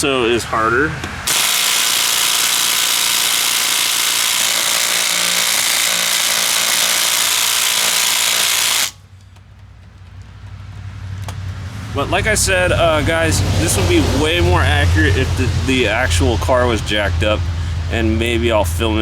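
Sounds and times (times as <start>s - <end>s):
impact wrench hammering: 1.1s - 9.0s.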